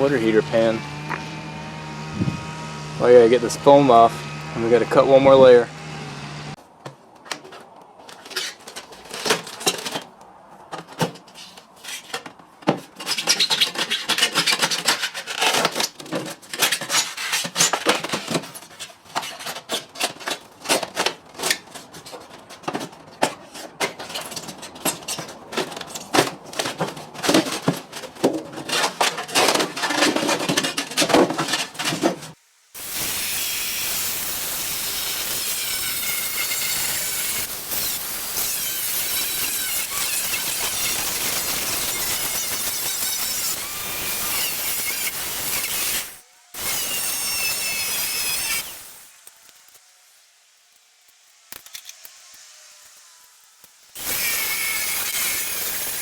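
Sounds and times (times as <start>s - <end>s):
foam insulation scraping and tearing: 12.8s - 33.2s
cutting tool hissing: 32.8s - 49.2s, 52.1s - 56.0s.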